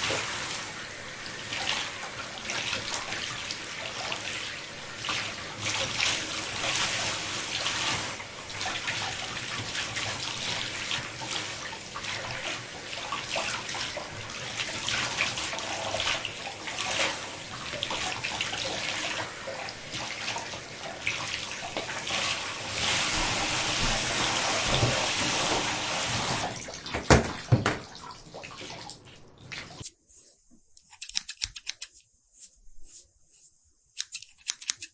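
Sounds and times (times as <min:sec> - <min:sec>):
tap water splashing into basin: 0:05.0 - 0:29.8.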